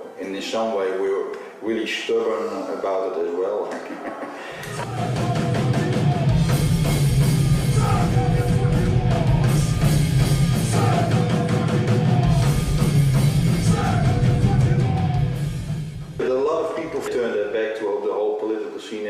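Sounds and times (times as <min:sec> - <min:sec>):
distorted electric guitars: 0:04.6 - 0:16.2
drum kit: 0:04.6 - 0:17.1
punk rock music: 0:04.6 - 0:17.1.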